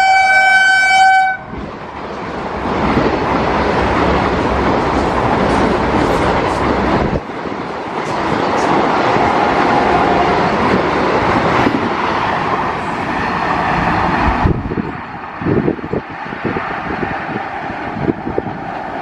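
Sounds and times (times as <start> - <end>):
express train passing: 0.0 - 19.0.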